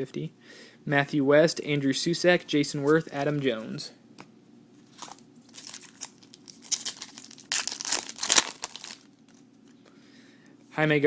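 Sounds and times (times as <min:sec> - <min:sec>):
foil wrapper crinkling and tearing: 0:04.9 - 0:09.4.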